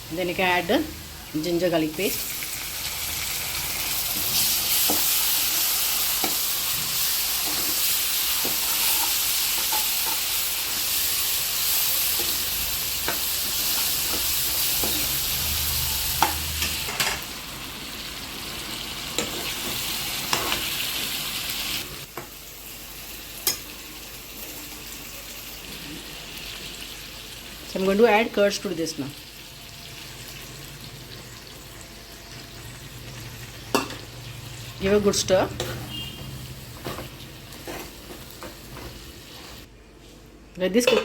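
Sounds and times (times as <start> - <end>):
food sizzling in hot oil: 0.2 - 39.7
spoon stirring and scraping pan: 4.1 - 15.3, 35.6 - 39.6.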